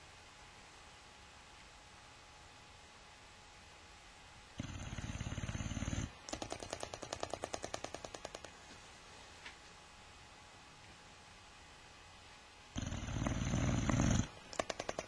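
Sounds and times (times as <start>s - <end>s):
dog snoring: 4.6s - 6.1s, 12.7s - 14.3s.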